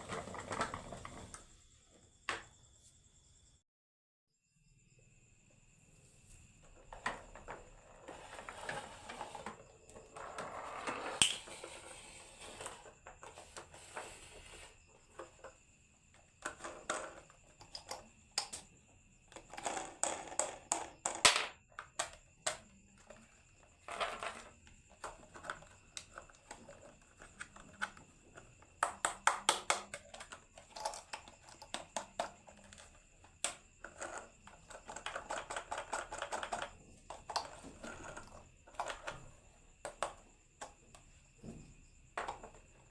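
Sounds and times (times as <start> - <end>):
marbles rolling down wooden run: 6.8 - 15.6, 19.4 - 21.6, 23.8 - 24.6.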